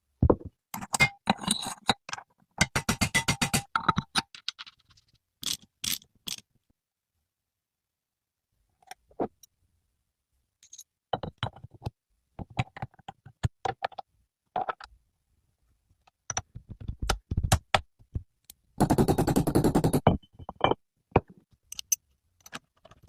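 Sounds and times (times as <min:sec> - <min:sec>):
knocks and clicks on metal: 0:02.6 - 0:04.2.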